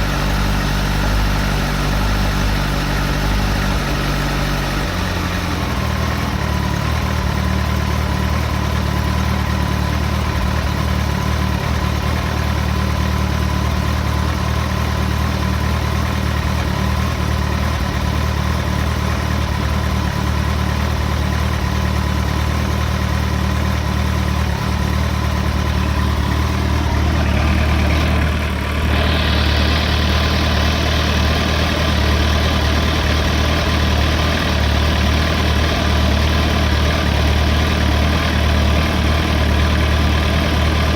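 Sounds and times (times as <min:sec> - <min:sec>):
engine clatter: 0:00.0 - 0:40.9
motorcycle engine idling: 0:00.0 - 0:40.9.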